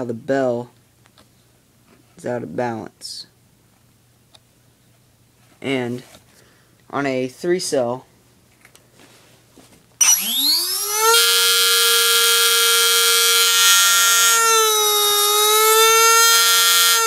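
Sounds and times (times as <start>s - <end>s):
electric motor whining: 10.0s - 17.0s.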